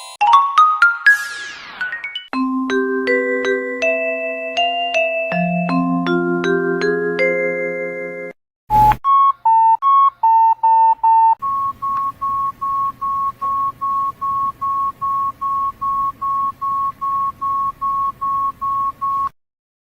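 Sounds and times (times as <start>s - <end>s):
phone beeps: 8.7s - 19.4s.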